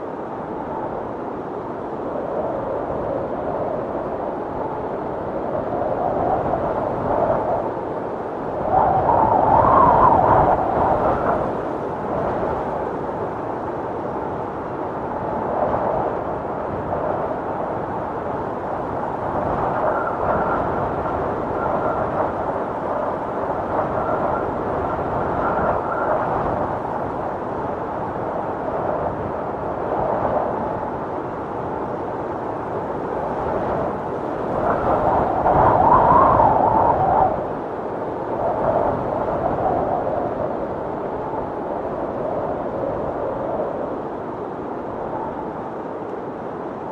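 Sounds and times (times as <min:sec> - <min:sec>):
storm wind blowing: 0:00.0 - 0:46.9.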